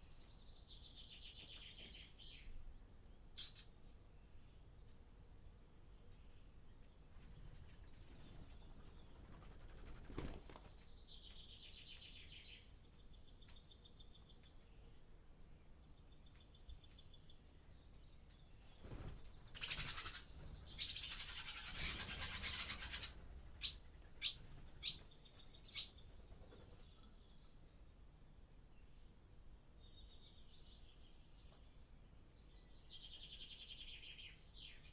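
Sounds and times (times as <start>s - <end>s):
swallows twittering: 3.4s - 3.7s, 18.6s - 27.3s
sharp clipped bird calls: 3.4s - 3.8s.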